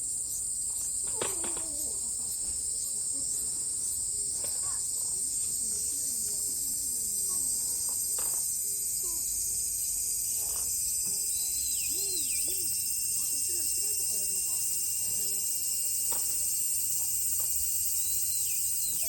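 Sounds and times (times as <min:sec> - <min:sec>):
insects droning: 0:00.0 - 0:19.0
dipping whistled bird call: 0:11.2 - 0:12.8.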